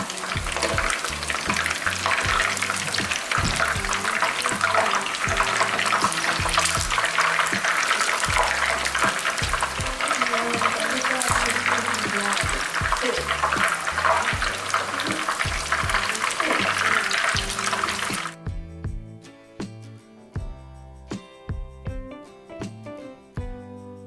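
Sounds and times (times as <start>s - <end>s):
chicken deep-frying in oil: 0.0s - 18.4s
background music with bass: 0.0s - 24.0s.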